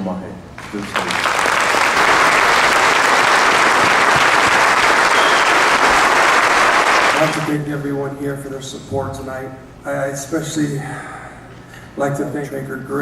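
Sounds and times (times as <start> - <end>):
audience applauding: 0.6 - 7.5.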